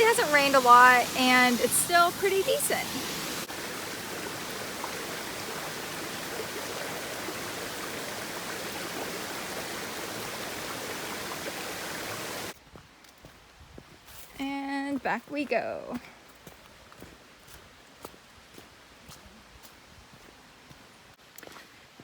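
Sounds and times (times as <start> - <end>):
small waterfall rushing: 0.0 - 12.6.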